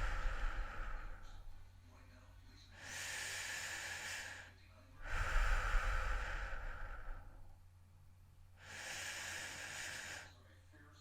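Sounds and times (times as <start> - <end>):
heavy human breathing: 0.0 - 1.6, 2.7 - 7.6, 8.6 - 10.4.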